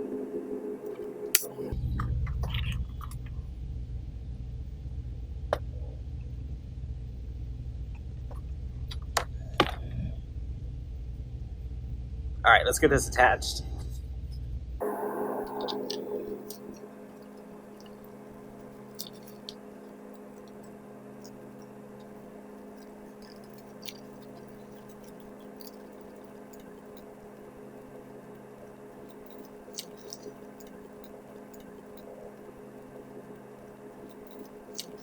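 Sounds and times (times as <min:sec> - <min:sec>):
low electrical hum: 0:00.0 - 0:35.0
small clicks of hands attaching pieces: 0:18.9 - 0:27.1, 0:29.1 - 0:32.1, 0:34.0 - 0:35.0.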